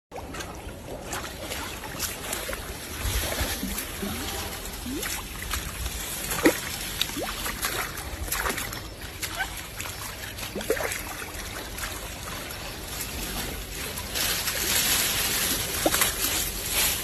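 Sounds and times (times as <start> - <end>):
water splashing and sloshing: 0.1 - 17.0.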